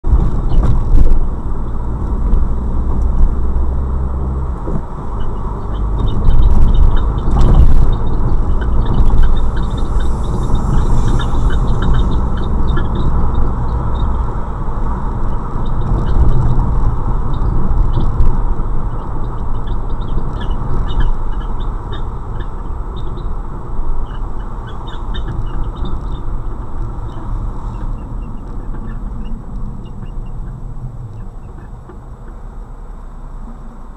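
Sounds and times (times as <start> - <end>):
road and engine rumble: 0.0 - 33.9
high-pitched squeaks: 5.1 - 14.2, 24.0 - 31.9.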